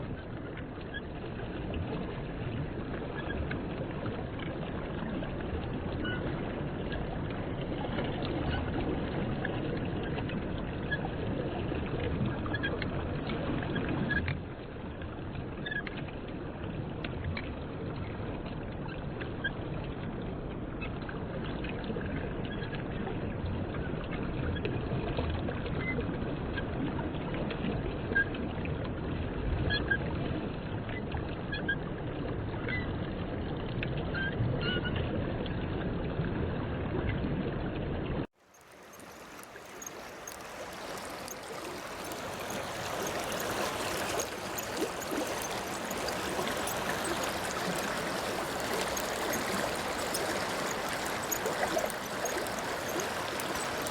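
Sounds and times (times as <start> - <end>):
water sloshing and gurgling: 0.0 - 53.9
small clicks: 38.5 - 53.9.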